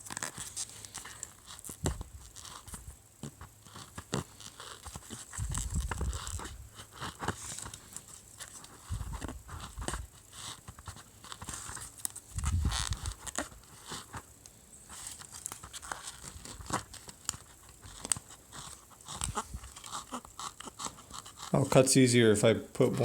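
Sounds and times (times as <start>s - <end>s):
foam being cut and torn: 15.1s - 21.8s.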